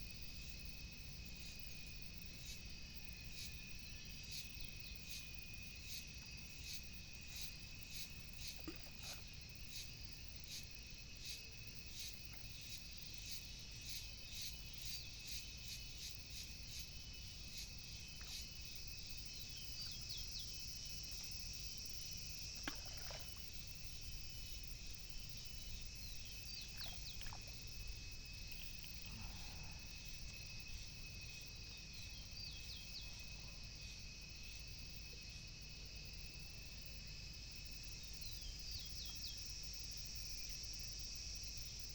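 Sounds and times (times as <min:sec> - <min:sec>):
hiss of insects: 0:00.0 - 0:41.9
insects droning: 0:00.0 - 0:41.9
faint low rumble: 0:22.7 - 0:34.7.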